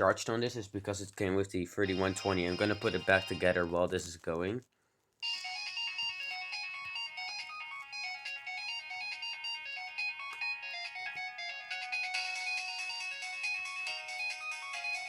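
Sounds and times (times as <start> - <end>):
polyphonic phone ringtone: 1.8 - 3.8, 5.2 - 15.0.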